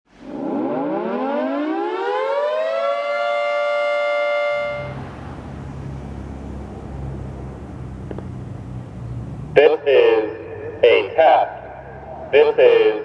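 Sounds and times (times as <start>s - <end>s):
rising electronic siren: 0.1s - 5.5s.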